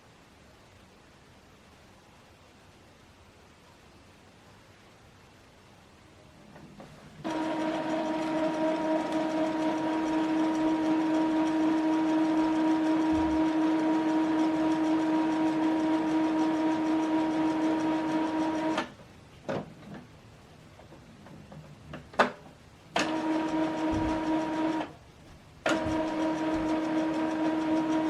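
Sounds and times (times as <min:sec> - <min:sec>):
printer motor humming: 0:06.8 - 0:19.0, 0:23.0 - 0:25.0, 0:25.6 - 0:28.0.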